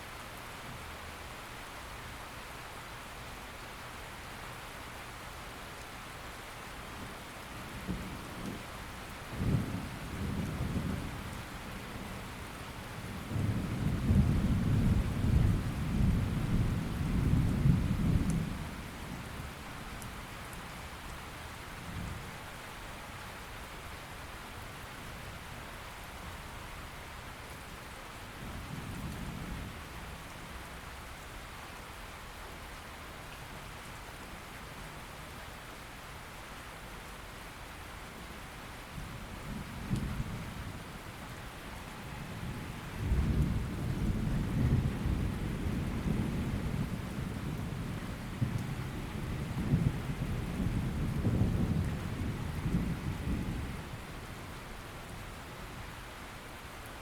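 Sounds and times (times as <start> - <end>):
steady rain: 0.0 - 57.0
thunder rumbling: 42.2 - 54.0.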